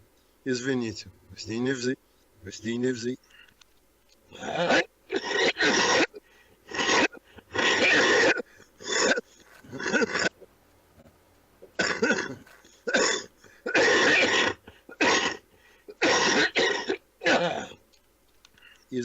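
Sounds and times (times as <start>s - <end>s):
man coughing: 4.4s - 10.3s, 11.8s - 17.8s.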